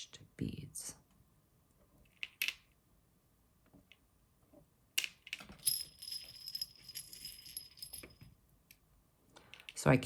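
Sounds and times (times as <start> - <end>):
glass beads clinking: 5.5 - 8.2.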